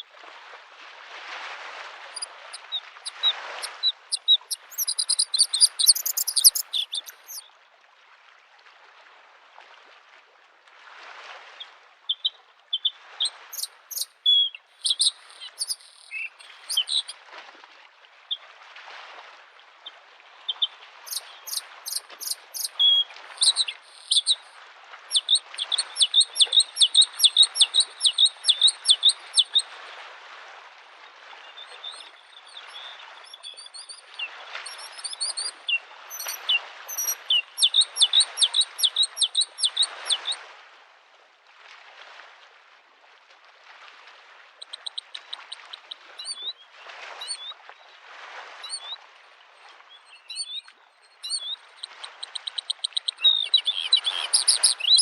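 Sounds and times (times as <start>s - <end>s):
lake waves washing on shore: 0.0s - 12.0s, 12.9s - 55.0s
bird singing fast high notes: 3.1s - 7.4s.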